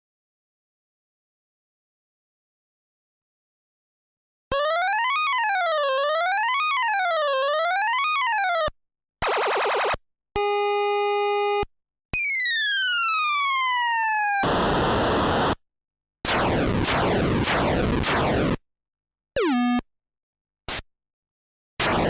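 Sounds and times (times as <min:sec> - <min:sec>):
siren-like electronic wail: 0:04.5 - 0:08.7, 0:12.2 - 0:14.5.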